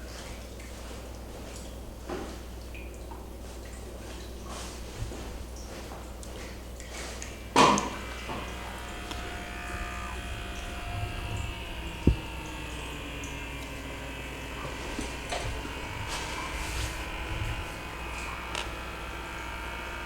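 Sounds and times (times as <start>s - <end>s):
small electric motor humming: 7.6s - 20.0s.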